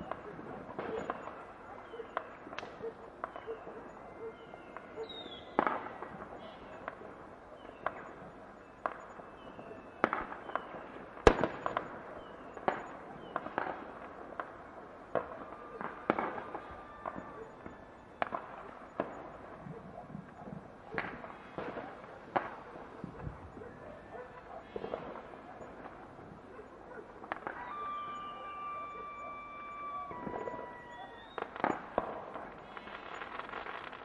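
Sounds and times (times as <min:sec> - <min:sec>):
fireworks banging: 0:00.0 - 0:04.0, 0:04.6 - 0:34.0
falling firework whistles: 0:27.3 - 0:34.0.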